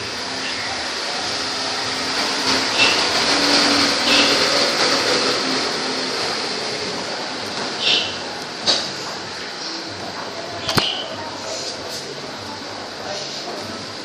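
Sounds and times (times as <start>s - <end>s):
scooter engine running: 0.0s - 7.5s.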